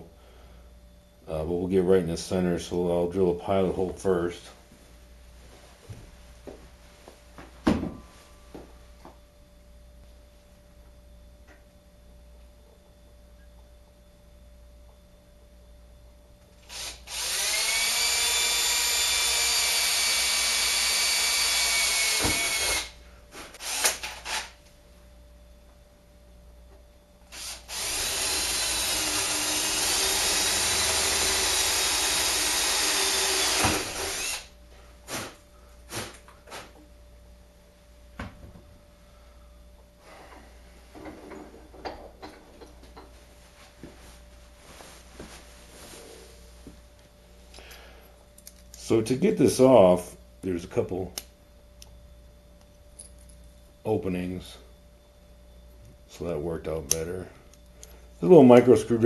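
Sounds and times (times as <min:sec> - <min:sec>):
power drill whining: 0:16.6 - 0:23.0, 0:23.6 - 0:24.6, 0:27.3 - 0:34.5.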